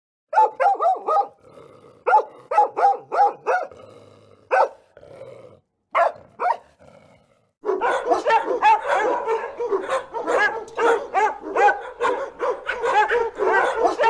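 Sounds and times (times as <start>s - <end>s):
dog barking: 0.3s - 1.4s, 2.0s - 3.8s, 4.5s - 4.9s, 5.9s - 6.8s, 7.6s - 14.0s.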